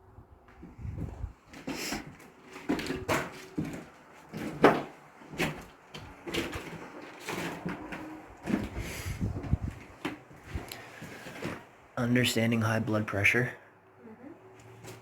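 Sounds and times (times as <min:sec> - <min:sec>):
objects knocking and scraping: 0:01.0 - 0:11.7.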